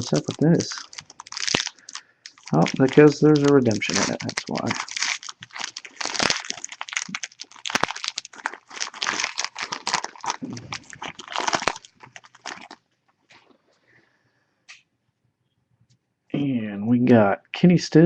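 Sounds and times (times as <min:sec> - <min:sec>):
foil wrapper crinkling: 0:00.0 - 0:12.8.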